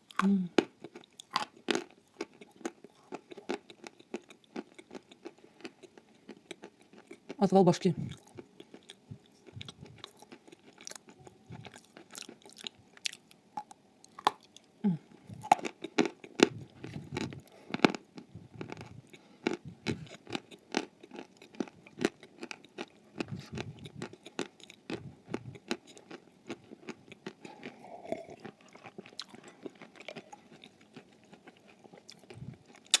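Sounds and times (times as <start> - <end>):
crunchy food being chewed: 0.0 - 33.0.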